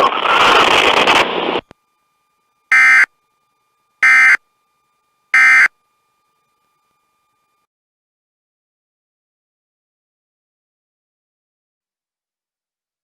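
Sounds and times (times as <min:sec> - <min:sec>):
digital data tone bursts: 0:02.7 - 0:03.2, 0:04.0 - 0:04.4, 0:05.3 - 0:05.8.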